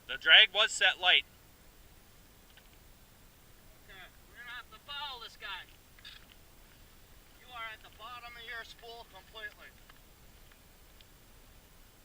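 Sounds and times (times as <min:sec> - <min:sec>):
faint outdoor hiss: 0:00.0 - 0:12.0
faint ticks: 0:02.4 - 0:02.9, 0:08.7 - 0:11.2.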